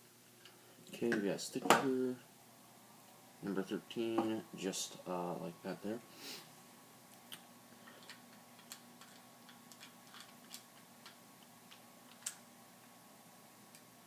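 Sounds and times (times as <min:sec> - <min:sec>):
plastic bricks clicking together: 0:08.0 - 0:12.4.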